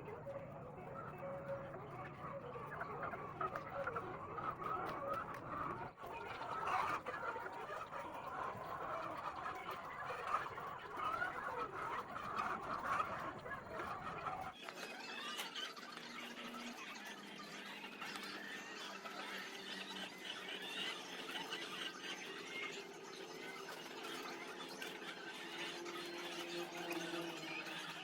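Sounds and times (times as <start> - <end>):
hens clucking: 0.1 - 15.4.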